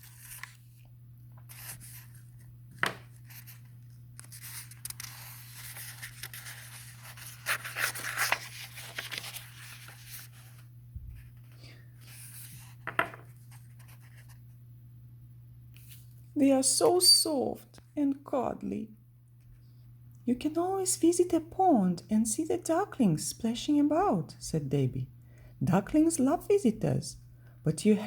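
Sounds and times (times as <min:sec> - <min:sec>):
crinkly rustling and scraping: 0:00.0 - 0:00.8, 0:01.4 - 0:14.4
steady low hum: 0:00.0 - 0:28.0.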